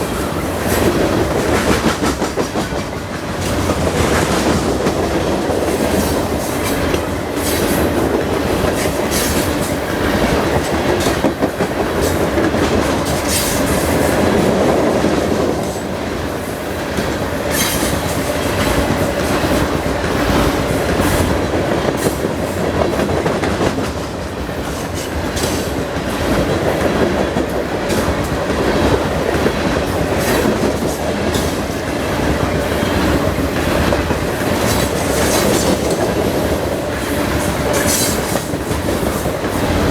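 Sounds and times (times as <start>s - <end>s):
freight train rumbling: 0.0s - 39.9s
wheels clacking over rail joints: 16.8s - 39.9s.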